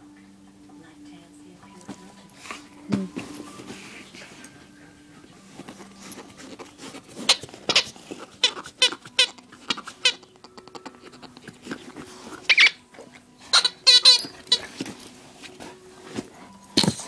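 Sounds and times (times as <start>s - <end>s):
squeaky dog toy squeaking: 7.2s - 11.4s, 12.4s - 12.9s, 13.5s - 14.7s.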